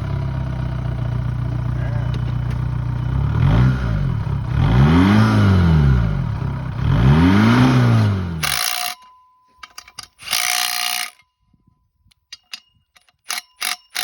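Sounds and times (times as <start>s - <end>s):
car engine idling and revving: 0.0s - 8.6s.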